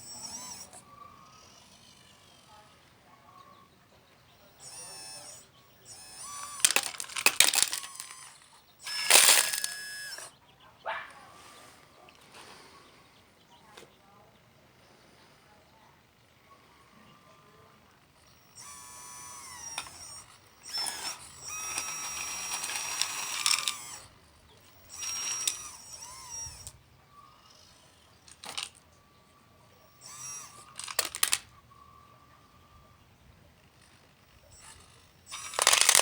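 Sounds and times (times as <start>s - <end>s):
small electric motors whining: 0.0s - 10.4s, 15.5s - 36.0s
sharp clicks: 4.4s - 10.4s, 17.9s - 26.8s, 27.4s - 28.8s, 29.9s - 31.6s, 33.6s - 36.0s.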